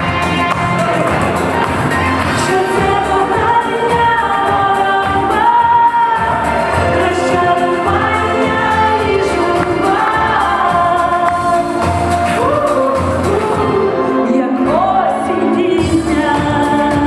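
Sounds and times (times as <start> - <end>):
pop song with sung vocals: 0.0 - 17.0.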